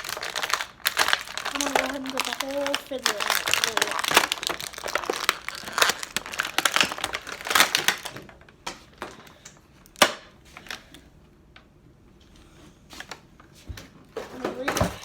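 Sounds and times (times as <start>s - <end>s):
plastic packaging crinkling: 0.0s - 9.4s.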